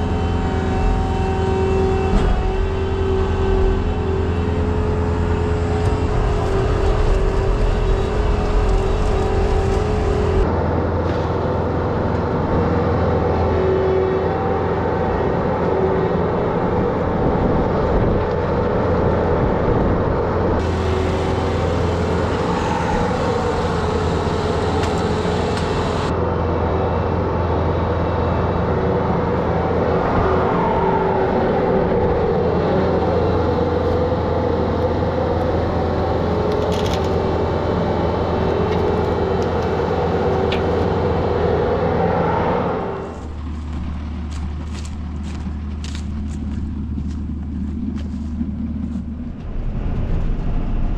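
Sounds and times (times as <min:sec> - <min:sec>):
tractor engine running: 0:02.5 - 0:13.3, 0:16.9 - 0:29.6, 0:43.1 - 0:50.9.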